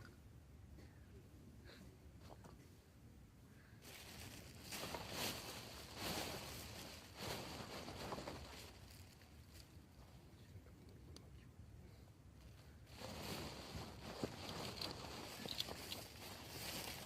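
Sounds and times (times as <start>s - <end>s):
rustling handling noise: 3.8s - 11.0s, 12.4s - 17.0s.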